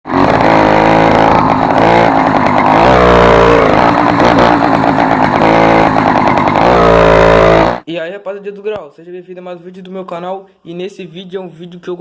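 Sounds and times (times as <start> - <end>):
small engine revving: 0.1 - 7.9.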